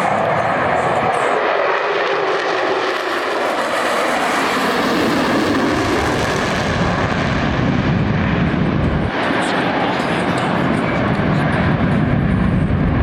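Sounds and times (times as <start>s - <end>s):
aircraft flying past: 0.0s - 13.0s
low rumble: 6.2s - 9.2s, 10.8s - 13.0s.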